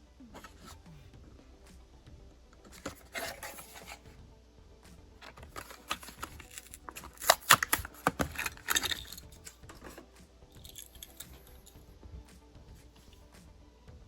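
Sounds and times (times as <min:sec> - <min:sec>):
packaging crackling and clicking: 0:05.2 - 0:10.0, 0:10.6 - 0:11.7.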